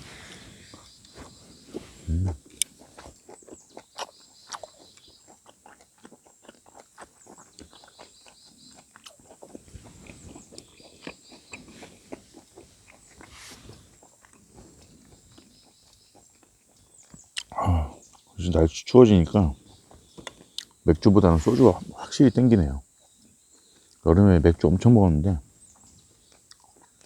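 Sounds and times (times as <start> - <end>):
person chewing and eating: 0.7 - 18.3, 25.8 - 27.0
mouth clicks and smacks: 16.2 - 18.2.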